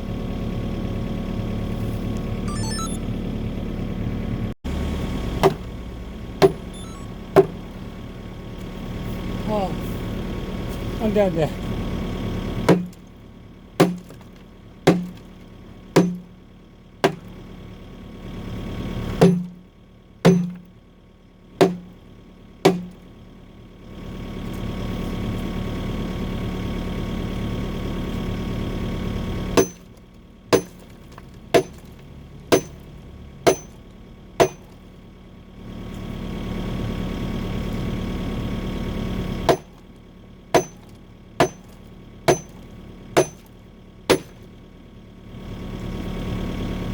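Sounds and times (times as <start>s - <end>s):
diesel engine and hydraulics: 0.0s - 46.9s
excavator bucket hammering concrete: 5.4s - 5.7s, 6.4s - 6.7s, 7.4s - 7.6s, 12.7s - 13.0s, 13.8s - 14.3s, 14.9s - 15.3s, 16.0s - 16.4s, 17.0s - 17.4s, 19.2s - 19.6s, 20.3s - 20.7s, 21.6s - 22.0s, 22.7s - 23.0s, 29.6s - 32.9s, 33.5s - 33.8s, 34.4s - 34.8s, 39.5s - 39.9s, 40.6s - 44.5s.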